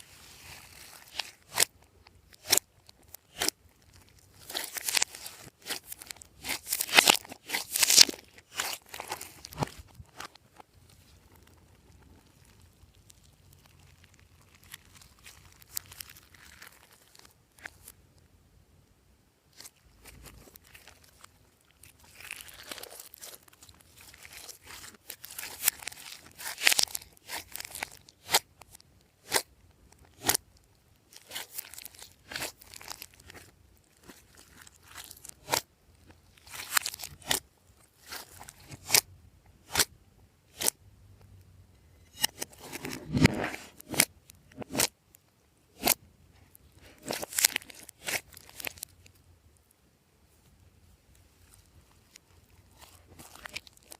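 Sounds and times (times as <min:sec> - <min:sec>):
slime popping and squishing: 0:00.4 - 0:10.5, 0:11.2 - 0:17.9, 0:19.6 - 0:30.4, 0:31.1 - 0:37.4, 0:46.9 - 0:49.0.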